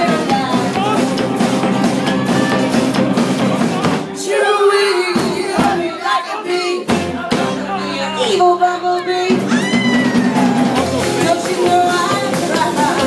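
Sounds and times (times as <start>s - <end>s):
person singing: 0.0s - 1.3s, 4.0s - 13.0s
live band playing: 0.0s - 13.0s.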